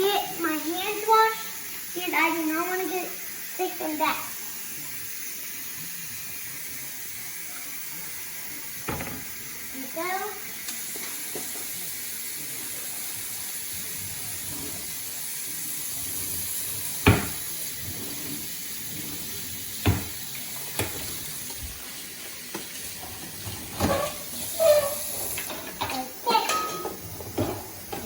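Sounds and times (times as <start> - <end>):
tap running into sink: 8.8 - 9.4, 16.9 - 17.8, 18.8 - 28.0.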